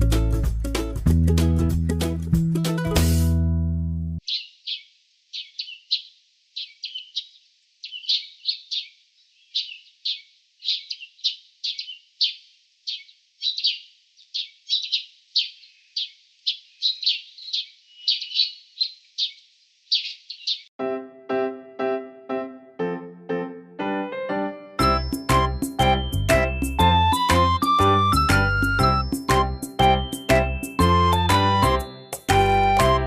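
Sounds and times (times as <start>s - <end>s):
small bird chirping: 4.2s - 20.8s.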